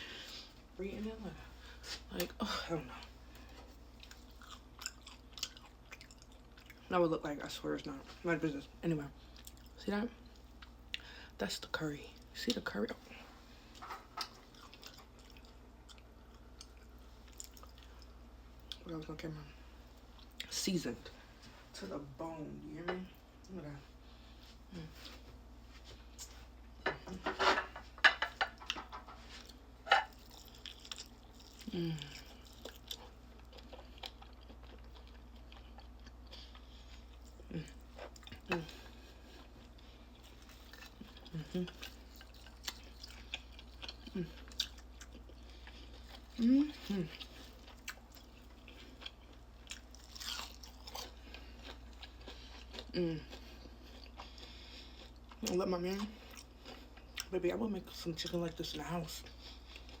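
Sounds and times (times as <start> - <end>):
steady low hum: 0.0 - 60.0
chewing: 3.0 - 6.9, 13.7 - 18.8, 28.4 - 57.3, 59.2 - 60.0
crunching fried chicken: 30.1 - 38.5, 39.4 - 57.2
person humming: 31.7 - 32.1, 46.4 - 47.1.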